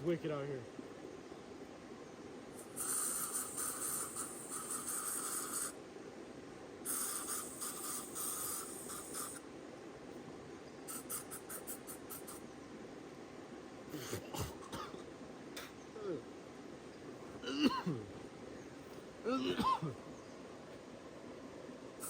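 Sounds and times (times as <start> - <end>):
bug spray hissing: 2.6 - 5.8, 6.9 - 9.4, 10.9 - 12.4.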